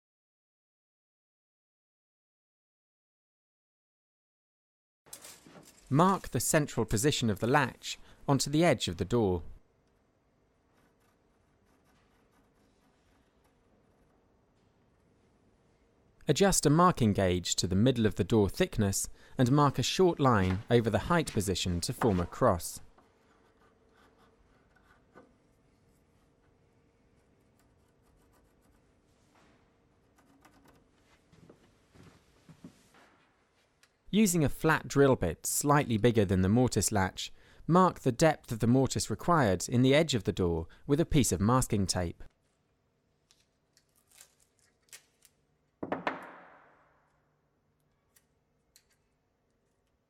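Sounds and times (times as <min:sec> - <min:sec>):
marking gauge scratching wood: 0:10.6 - 0:13.6, 0:23.0 - 0:25.4.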